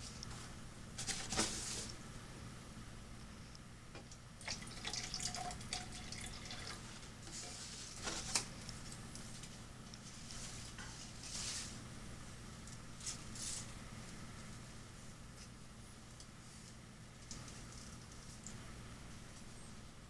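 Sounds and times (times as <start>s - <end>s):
faint steady hum: 0.0s - 20.0s
water dripping and splashing: 4.4s - 6.8s.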